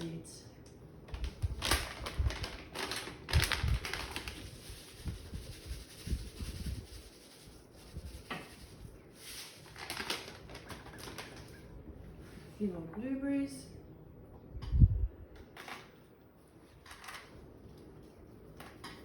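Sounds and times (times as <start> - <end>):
seeds rustling into a bowl: 1.2 - 11.6.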